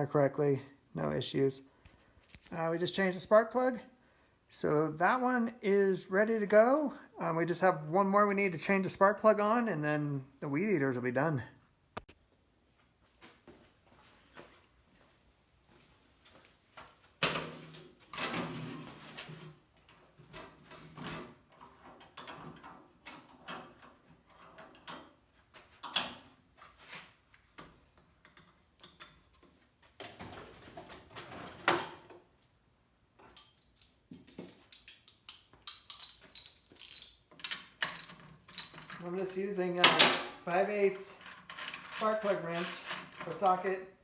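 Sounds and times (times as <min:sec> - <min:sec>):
metal parts clicking and clattering: 0:33.2 - 0:39.1, 0:41.1 - 0:43.6.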